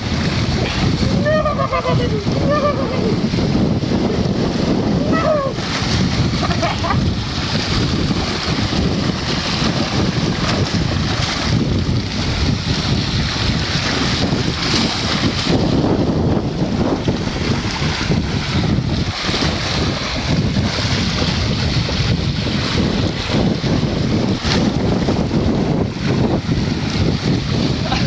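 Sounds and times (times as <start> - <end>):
whirlpool water churning: 0.0 - 28.0
wind buffeting microphone: 0.0 - 28.0.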